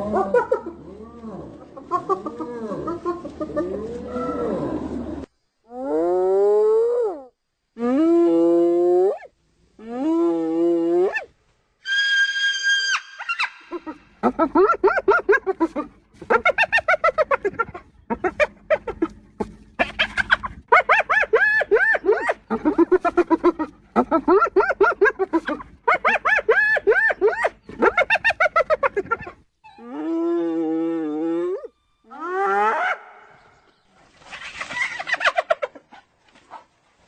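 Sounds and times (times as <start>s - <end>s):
hyenas giggling: 0.0s - 4.6s, 13.6s - 29.8s.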